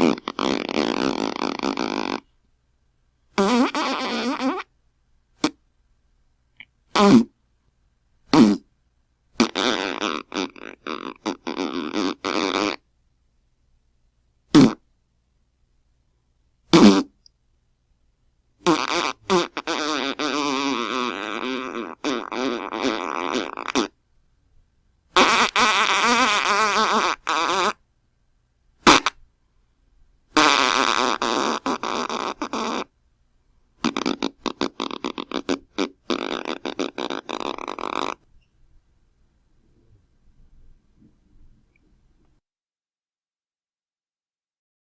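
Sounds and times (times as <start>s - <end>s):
fart sound effects: 0.0s - 2.2s, 3.4s - 4.7s, 7.0s - 7.3s, 8.3s - 8.6s, 9.4s - 12.8s, 14.5s - 14.8s, 16.7s - 17.1s, 18.6s - 24.0s, 25.2s - 27.8s, 28.8s - 29.2s, 30.4s - 32.9s, 33.8s - 38.2s.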